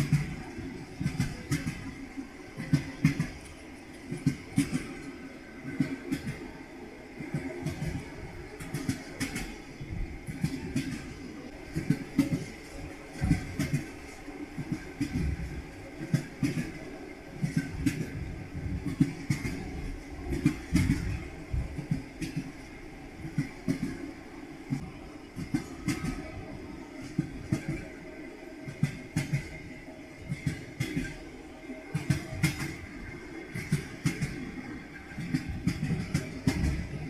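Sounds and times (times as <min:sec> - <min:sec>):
train wheels clacking over rail joints: 0:00.0 - 0:06.6, 0:07.2 - 0:24.1, 0:24.7 - 0:31.2, 0:31.8 - 0:37.0
train rolling rumble: 0:00.0 - 0:37.0.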